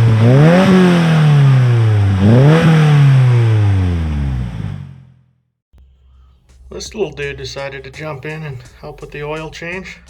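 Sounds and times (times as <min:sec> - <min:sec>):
car engine revving: 0:00.0 - 0:05.2.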